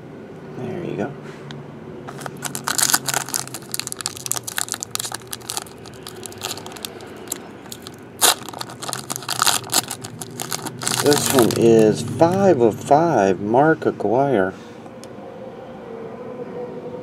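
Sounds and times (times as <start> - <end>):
plastic packaging crackling: 2.1 - 12.4.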